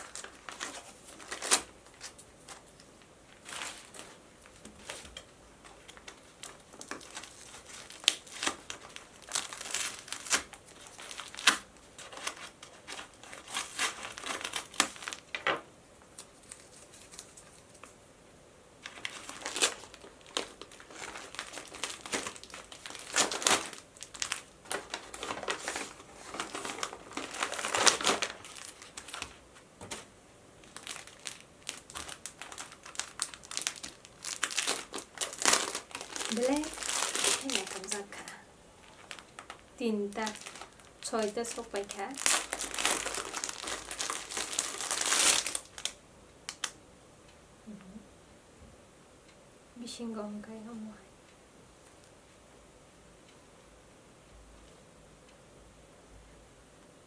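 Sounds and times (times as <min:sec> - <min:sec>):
packaging crinkling: 0:00.0 - 0:18.0, 0:18.8 - 0:46.8.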